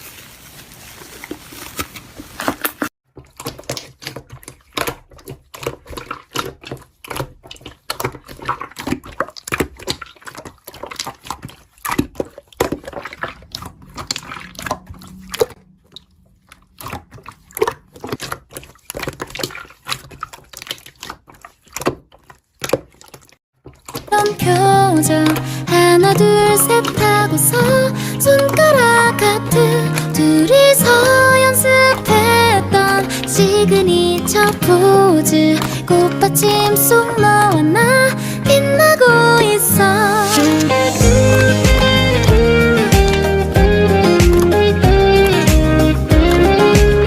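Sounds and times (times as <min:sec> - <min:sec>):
slime squished by hand: 0:01.2 - 0:24.2.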